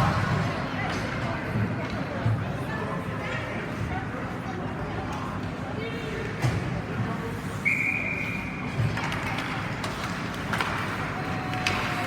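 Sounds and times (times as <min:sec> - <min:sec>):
ice rink noise: 0:00.0 - 0:12.0
referee's whistle: 0:07.6 - 0:08.6.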